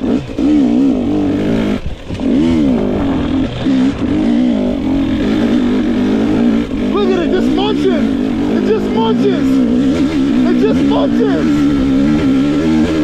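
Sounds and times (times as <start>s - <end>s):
dirt bike engine revving: 0.0s - 13.0s.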